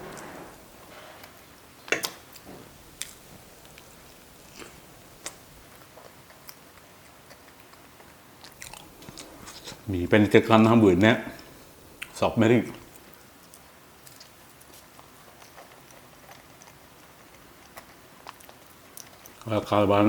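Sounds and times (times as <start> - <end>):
person chewing: 1.2 - 9.9, 12.8 - 19.5.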